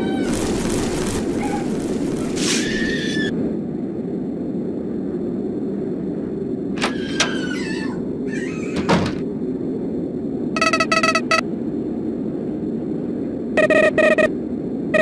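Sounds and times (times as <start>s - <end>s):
storm wind: 0.0s - 10.6s, 11.4s - 13.6s, 14.3s - 15.0s.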